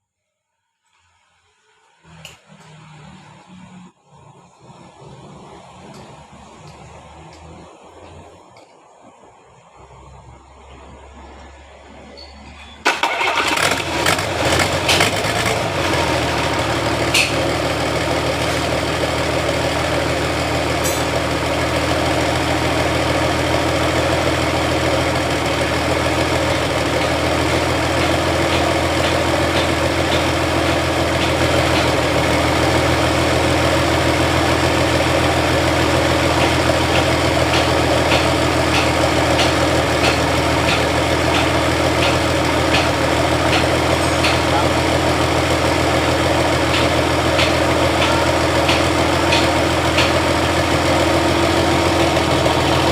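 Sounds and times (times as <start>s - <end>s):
vehicle engine idling: 12.9s - 52.9s.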